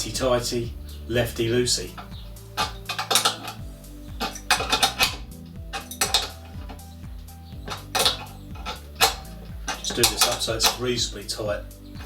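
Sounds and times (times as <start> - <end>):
spanner clinking on metal fitting: 1.7 - 3.6, 4.2 - 6.9, 7.6 - 11.1.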